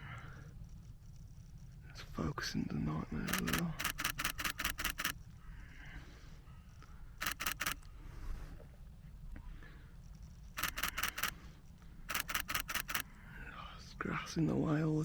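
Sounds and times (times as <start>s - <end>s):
camera shutter bursts: 3.2s - 5.2s, 7.2s - 7.9s, 10.5s - 11.4s, 12.1s - 13.1s.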